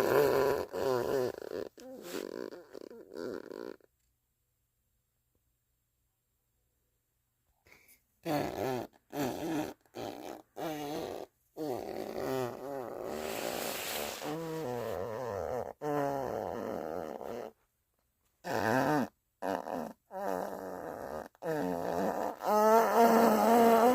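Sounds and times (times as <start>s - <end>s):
farting: 0.0s - 3.9s, 8.2s - 17.6s, 18.4s - 23.9s.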